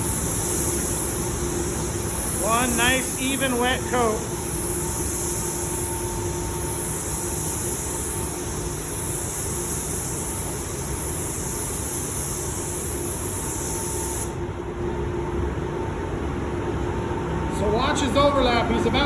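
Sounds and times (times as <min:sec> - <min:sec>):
paint spray gun hissing: 0:00.0 - 0:14.4.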